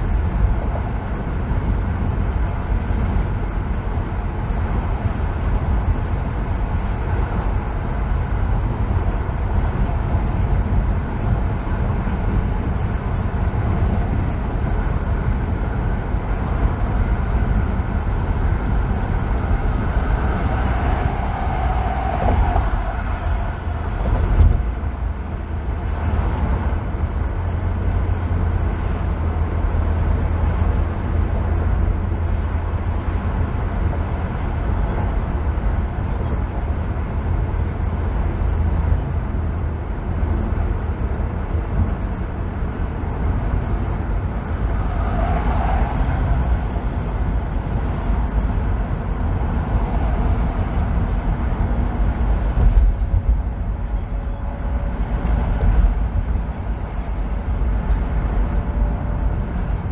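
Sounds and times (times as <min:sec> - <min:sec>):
car driving on freeway: 0:00.0 - 0:59.9
thump: 0:24.0 - 0:24.8.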